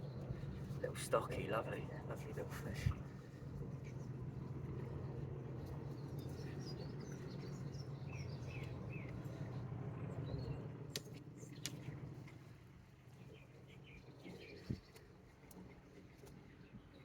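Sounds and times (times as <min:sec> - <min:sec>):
low background rumble: 0:00.0 - 0:17.0
small birds chirping: 0:03.8 - 0:12.4, 0:13.0 - 0:17.0.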